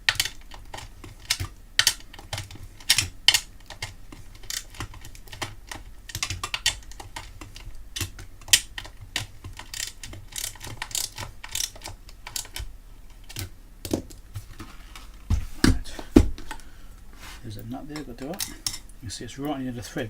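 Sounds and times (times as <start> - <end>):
heavier knocks: 15.2 - 16.6
clicks of hand tools and hardware: 17.8 - 19.6.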